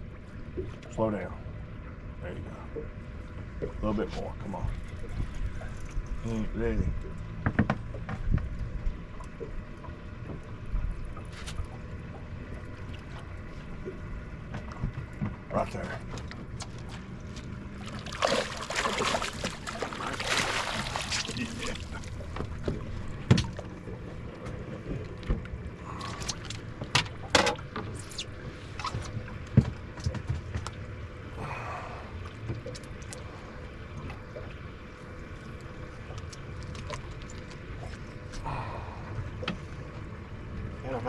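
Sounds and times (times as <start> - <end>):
steady low rumble: 0.0 - 41.0
knocks against boat: 7.4 - 8.6, 22.2 - 23.7, 26.8 - 27.9
water rushing and splashing: 17.6 - 29.2.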